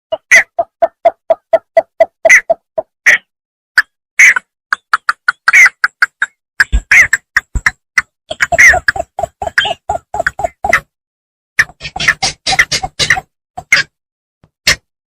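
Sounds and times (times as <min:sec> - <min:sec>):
bittern calling: 0:08.3 - 0:10.8.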